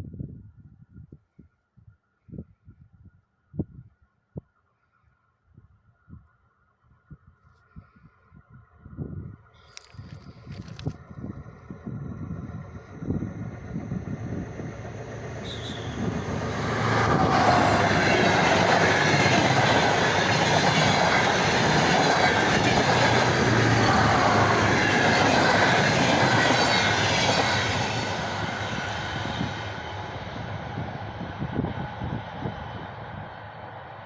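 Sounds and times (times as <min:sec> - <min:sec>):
high wheel and rail tones: 0:09.7 - 0:34.0
train rumbling along track: 0:09.8 - 0:34.0.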